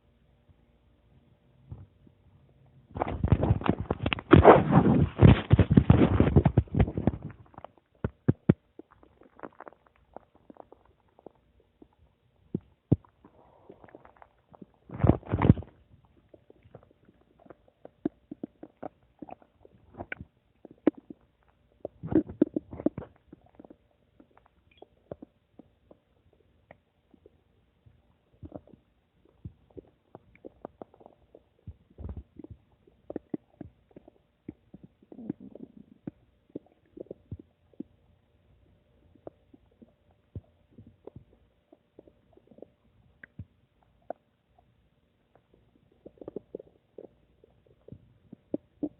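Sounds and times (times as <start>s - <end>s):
stomach gurgling: 1.7s - 2.2s, 2.9s - 48.9s
short pops and bubbling clicks: 3.0s - 26.1s, 28.4s - 38.0s.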